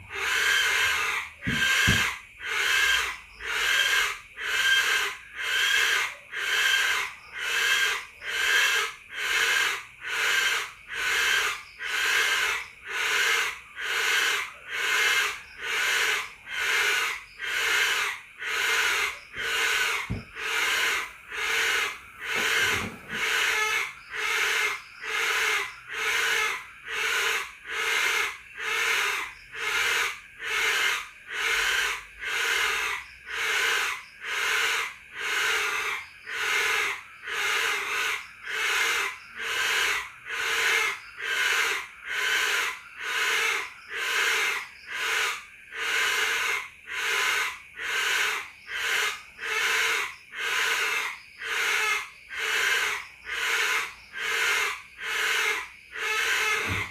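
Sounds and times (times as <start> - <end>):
animal call hissing rasping pulses: 0.0 - 56.9.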